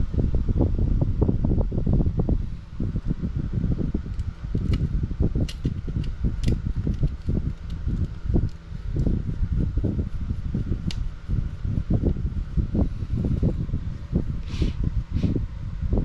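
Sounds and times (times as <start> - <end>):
handling rustles and bumps: 4.0 - 14.9
small parts clicking: 4.1 - 9.1.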